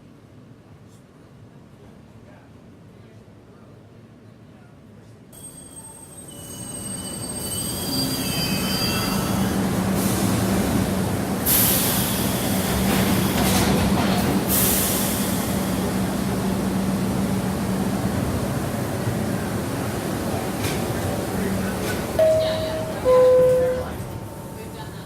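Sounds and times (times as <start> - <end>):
subway train rumble: 0.0 - 25.0
wavering wheel squeals: 6.3 - 9.8.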